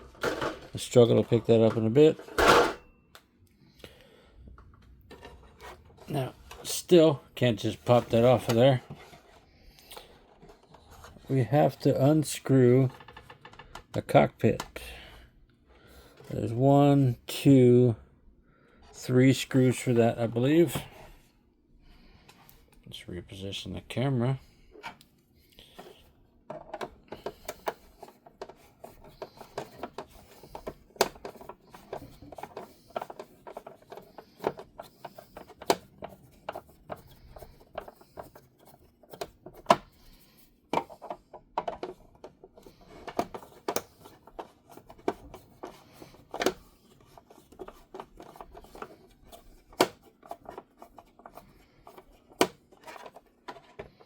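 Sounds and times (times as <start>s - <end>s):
hands handling plastic toy car: 4.6s - 11.8s, 25.7s - 54.0s.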